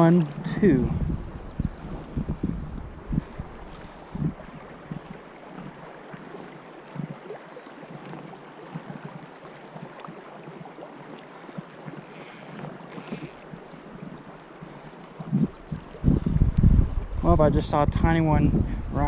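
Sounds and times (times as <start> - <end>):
wind buffeting microphone: 0.0 - 5.9, 14.0 - 19.0
river water flowing: 0.0 - 17.2.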